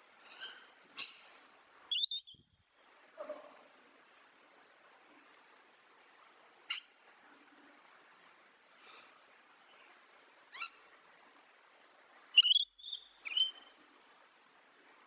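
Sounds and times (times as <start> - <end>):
faint steady hiss: 0.0 - 15.0
wild birds calling: 12.4 - 13.6.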